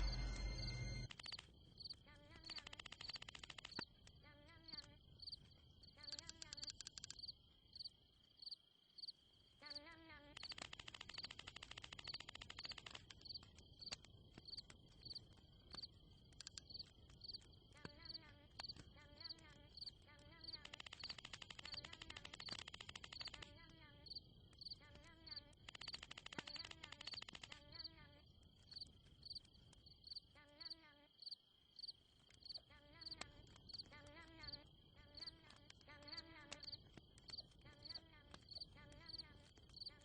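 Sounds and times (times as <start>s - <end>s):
fast insect trilling: 0.0s - 3.8s, 10.4s - 14.6s, 19.8s - 24.7s, 25.6s - 27.9s
insects droning and chirping: 0.0s - 40.0s.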